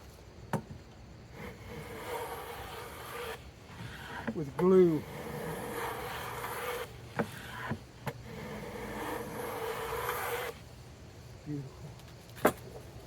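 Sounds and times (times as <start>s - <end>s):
hand plane hissing along wood: 1.3s - 10.8s.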